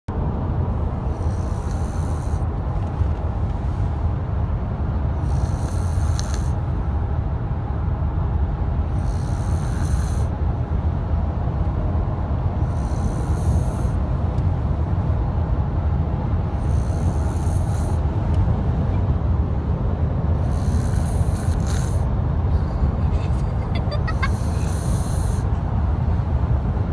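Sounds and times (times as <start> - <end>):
snoring breathy hiss: 0.8 - 2.5, 5.2 - 6.7, 8.9 - 10.3, 12.6 - 14.1, 16.5 - 18.1, 20.4 - 22.1, 24.1 - 25.6.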